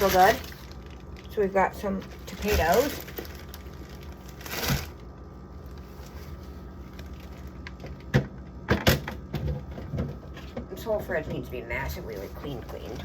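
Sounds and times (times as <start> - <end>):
refrigerator low hum: 0.0 - 13.0
food containers knocking and clattering: 7.8 - 10.7.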